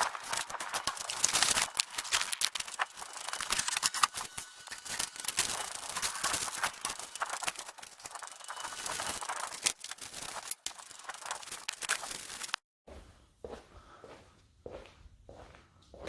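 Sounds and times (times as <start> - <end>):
crackling and rustling handling: 0.0 - 12.6.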